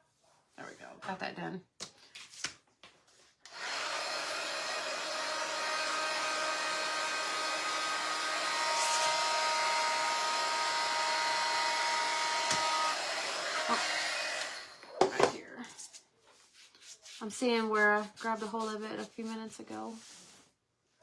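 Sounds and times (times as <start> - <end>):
hot-air blower whirring: 3.5 - 15.3.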